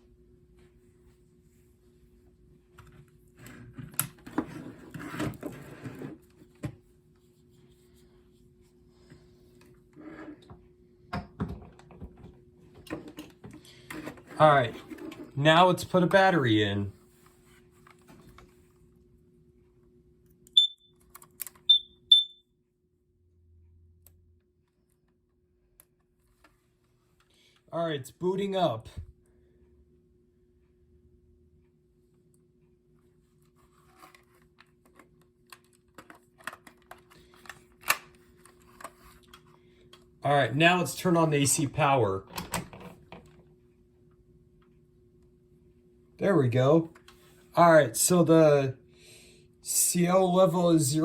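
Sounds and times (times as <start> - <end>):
high-pitched alarm beeps: 20.6 - 20.9, 21.7 - 22.4.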